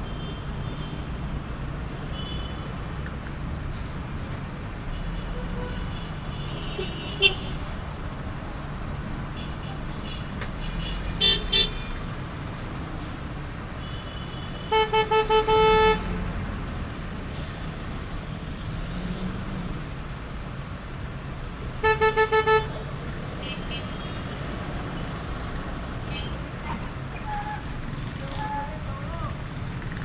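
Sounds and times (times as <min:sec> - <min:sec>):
city street traffic rumble: 0:00.0 - 0:30.0
car horns honking: 0:05.0 - 0:07.7, 0:09.4 - 0:12.0, 0:13.8 - 0:16.3, 0:21.8 - 0:24.4.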